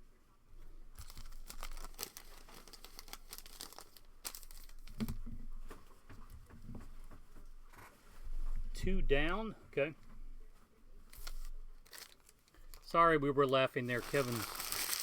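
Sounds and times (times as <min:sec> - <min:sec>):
foil wrappers crinkling and tearing: 0:01.0 - 0:05.1, 0:11.1 - 0:13.0, 0:13.8 - 0:15.0.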